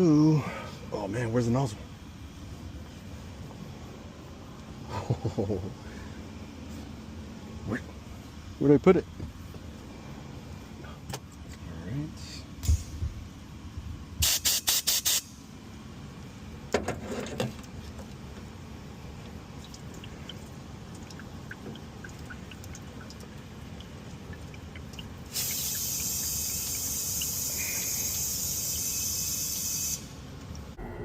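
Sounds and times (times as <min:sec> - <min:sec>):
compressed gas hissing from nozzle: 0:14.2 - 0:15.4, 0:25.3 - 0:30.2.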